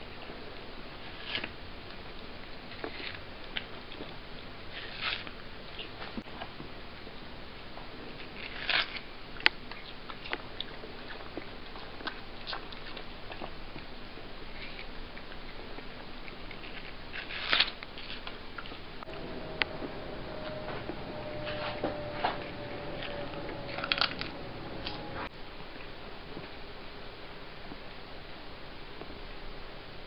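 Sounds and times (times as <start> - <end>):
cat chewing watermelon: 0.4 - 19.8.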